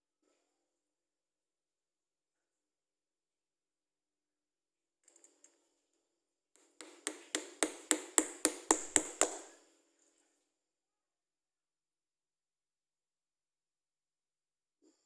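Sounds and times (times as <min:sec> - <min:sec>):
hard tool tapping on metal: 0:06.8 - 0:09.5.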